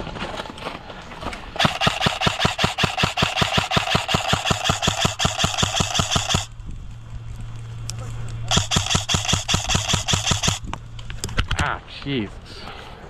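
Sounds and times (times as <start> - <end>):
airsoft gun full-auto burst: 1.6 - 6.5, 8.5 - 10.7.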